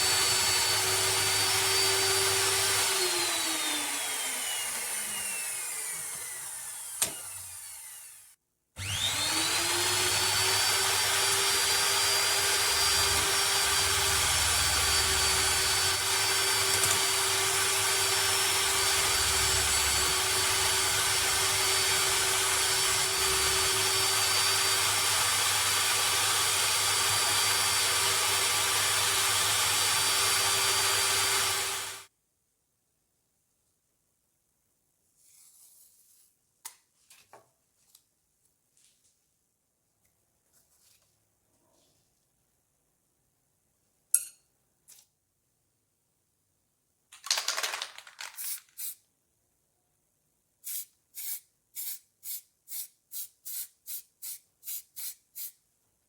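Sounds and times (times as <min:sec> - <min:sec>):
power tool motor whine: 0:00.0 - 0:32.1.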